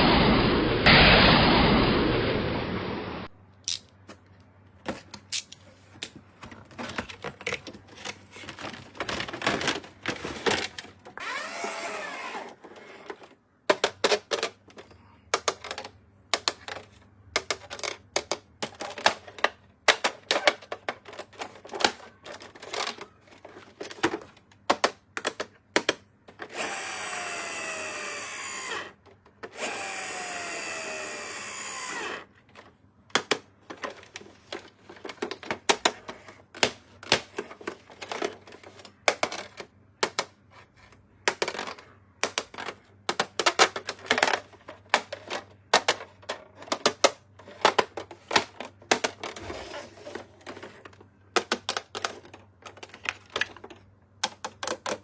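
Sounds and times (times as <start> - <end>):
steady noisy falling sounds: 0.0 - 3.3
packaging clicks and crinkles: 4.9 - 26.8.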